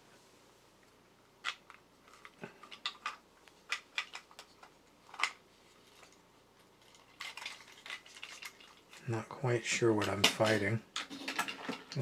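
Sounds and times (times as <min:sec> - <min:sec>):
plastic parts clicking together: 0:01.4 - 0:05.4, 0:06.8 - 0:08.9.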